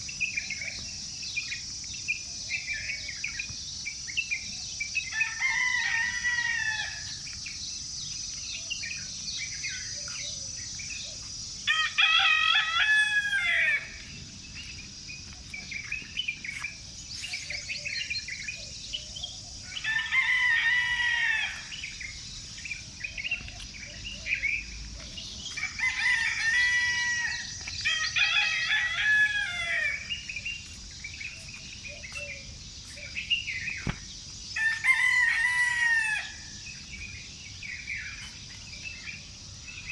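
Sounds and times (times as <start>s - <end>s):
roosters crowing: 5.1s - 7.2s, 11.7s - 14.1s, 19.7s - 22.0s, 25.5s - 30.3s, 34.5s - 36.6s
small birds chirping: 7.1s - 11.7s, 13.4s - 20.5s, 21.4s - 34.5s.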